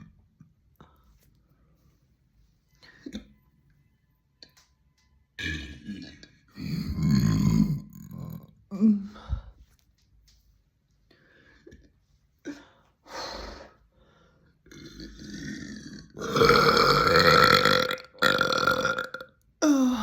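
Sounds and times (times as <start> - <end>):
woman burping deeply: 14.7 - 20.0.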